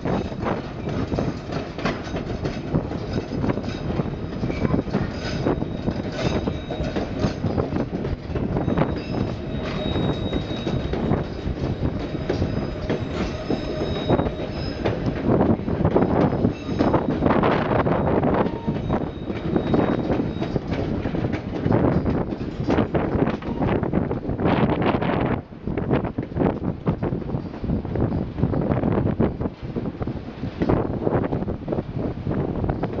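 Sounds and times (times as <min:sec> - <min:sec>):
train wheels clattering over rails: 0:00.0 - 0:24.4
high wheel squeal: 0:04.1 - 0:07.7, 0:08.6 - 0:15.1, 0:16.3 - 0:20.6.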